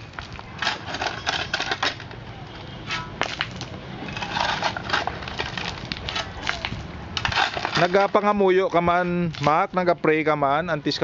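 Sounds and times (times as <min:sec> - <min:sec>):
stones clattering: 0:03.2 - 0:08.3
hand tools chipping concrete: 0:04.1 - 0:08.3.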